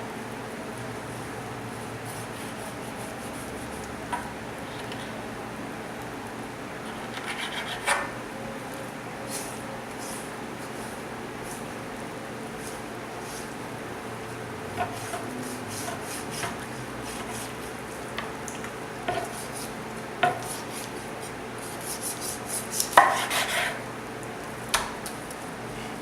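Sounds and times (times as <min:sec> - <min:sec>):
knife tapping and scraping board: 0:14.8 - 0:17.6, 0:18.2 - 0:21.0, 0:21.9 - 0:23.8.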